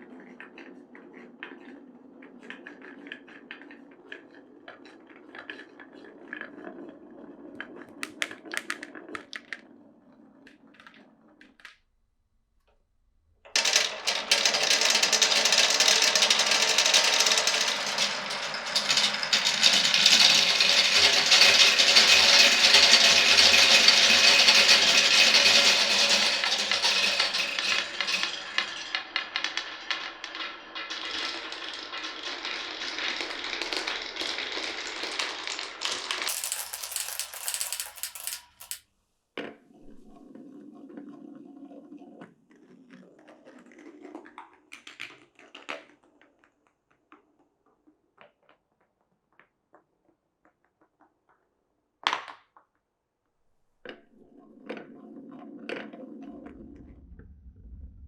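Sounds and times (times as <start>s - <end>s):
glass marbles rolling on wood: 7.5s - 11.7s, 13.6s - 38.8s, 39.8s - 40.2s.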